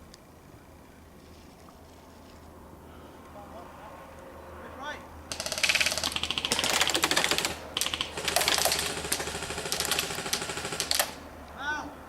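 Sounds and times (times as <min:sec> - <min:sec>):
airsoft guns firing: 0:05.3 - 0:11.4.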